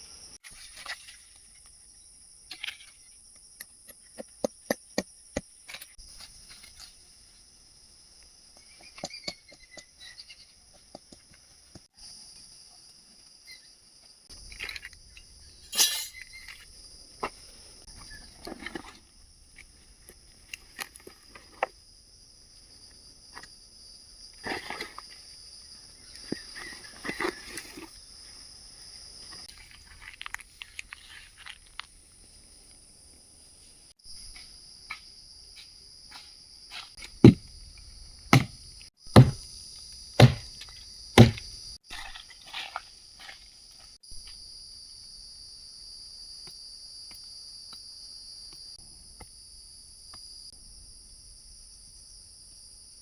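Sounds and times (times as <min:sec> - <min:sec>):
forest insects droning: 0:00.0 - 0:53.0
camp work handling noises: 0:14.1 - 0:21.8, 0:26.2 - 0:28.3, 0:34.1 - 0:44.0
sharp loud knocks: 0:38.4 - 0:38.6, 0:39.2 - 0:39.5, 0:40.2 - 0:40.6, 0:41.2 - 0:41.5.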